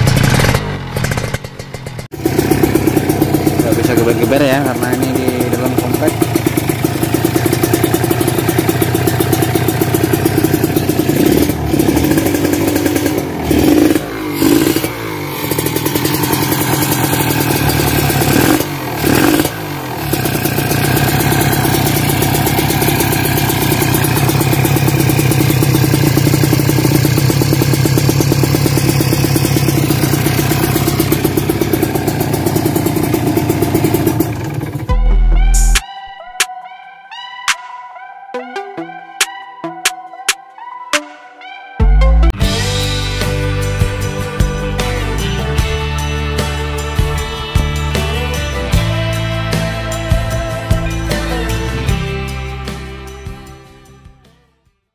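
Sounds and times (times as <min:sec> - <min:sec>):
motorcycle engine revving: 0:00.0 - 0:35.8.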